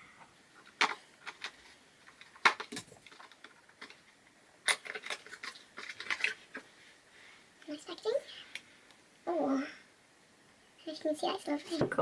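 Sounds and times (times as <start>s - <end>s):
packaging rustling: 0.5s - 7.3s.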